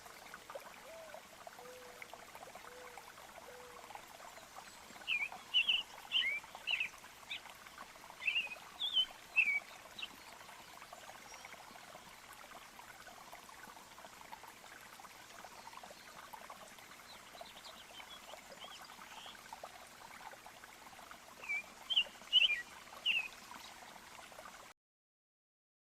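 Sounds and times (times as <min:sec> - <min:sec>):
stream water running: 0:00.0 - 0:24.8
birds chirping: 0:04.6 - 0:07.4, 0:08.2 - 0:10.2, 0:21.4 - 0:23.7.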